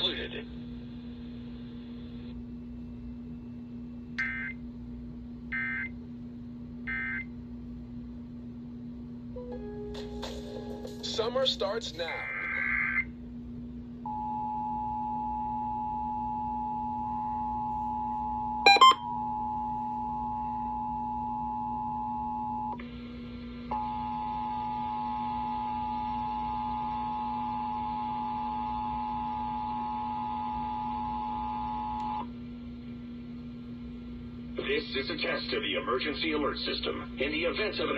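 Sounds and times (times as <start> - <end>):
steady low hum: 0.0 - 37.9
two-tone alert tone: 18.7 - 19.1.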